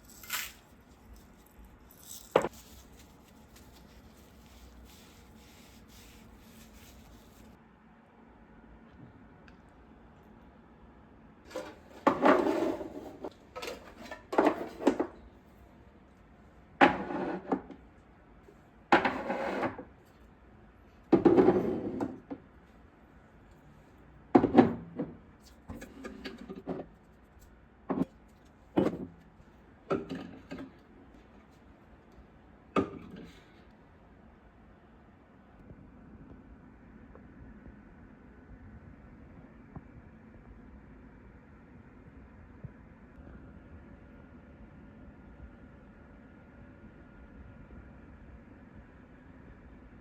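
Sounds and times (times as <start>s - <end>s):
short scraping and rustling: 0.0s - 7.6s.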